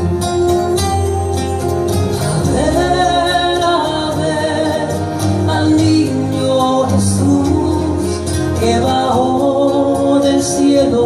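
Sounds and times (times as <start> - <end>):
bass: 0.0 - 11.0
piano: 0.0 - 11.0
person singing: 2.1 - 11.0.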